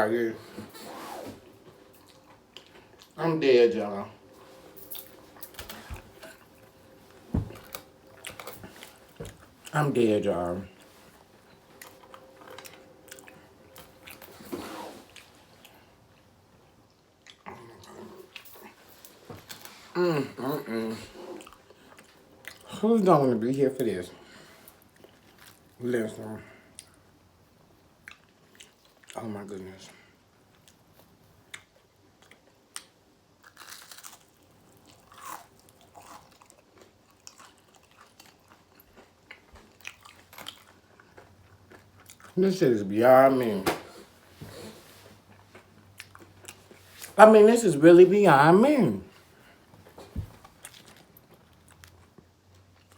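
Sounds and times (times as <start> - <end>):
crunching and chewing food: 1.5 - 3.2, 3.8 - 47.2, 49.2 - 52.9
crunchy chewing: 30.5 - 42.4.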